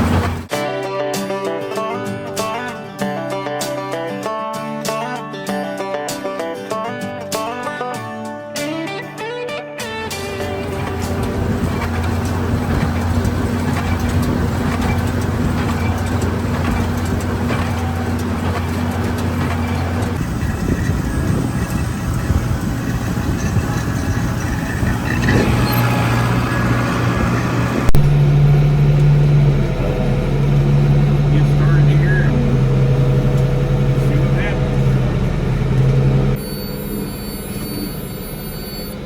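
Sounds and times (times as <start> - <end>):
tractor engine running: 0.0 - 0.5, 10.1 - 39.0.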